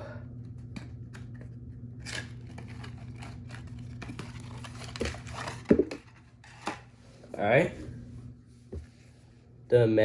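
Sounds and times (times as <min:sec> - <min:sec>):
steady low hum: 0:00.0 - 0:10.0
cardboard packaging rustling: 0:01.2 - 0:06.9.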